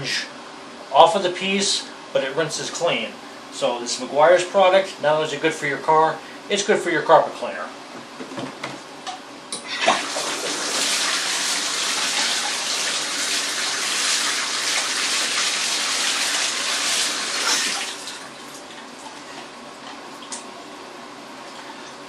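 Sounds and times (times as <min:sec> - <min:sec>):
tap water running: 0:09.7 - 0:20.4.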